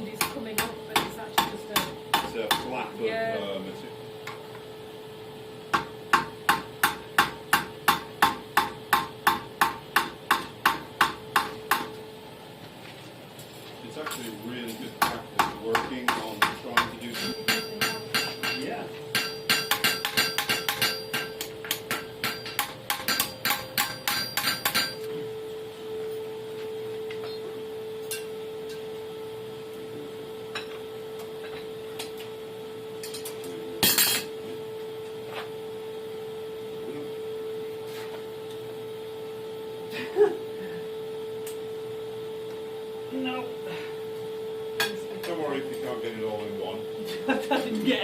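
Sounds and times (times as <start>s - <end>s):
steady hum: 0.0s - 48.0s
hammer striking hot steel on anvil: 0.2s - 2.8s, 5.7s - 12.0s, 14.1s - 25.1s, 28.0s - 28.9s, 33.0s - 34.4s.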